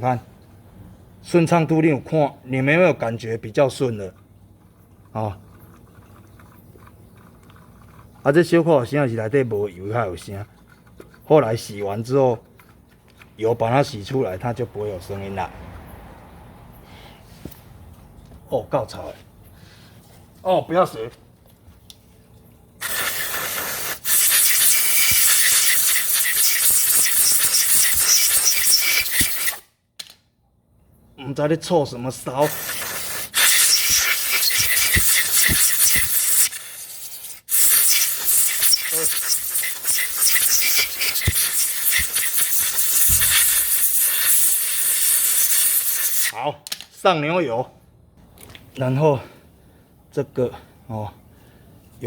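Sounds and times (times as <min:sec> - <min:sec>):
pressurised jet hissing: 0:22.8 - 0:29.6, 0:32.4 - 0:46.3.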